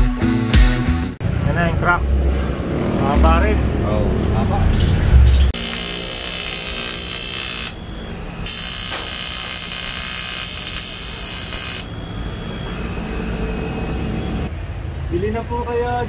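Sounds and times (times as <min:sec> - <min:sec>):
small electric power tool buzzing: 0:05.6 - 0:12.0.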